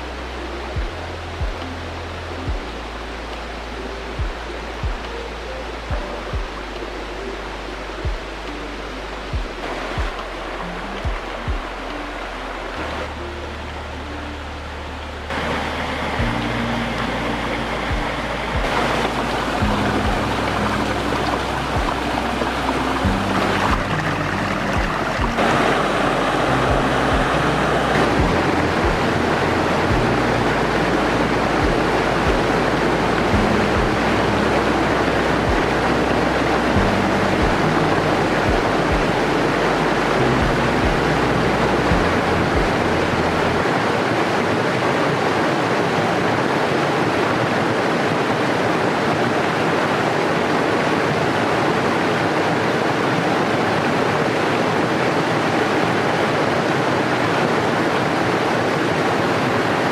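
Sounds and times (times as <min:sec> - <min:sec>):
wind rumble on microphone: 0:00.0 - 0:45.2
waterfall roaring: 0:00.0 - 0:59.9.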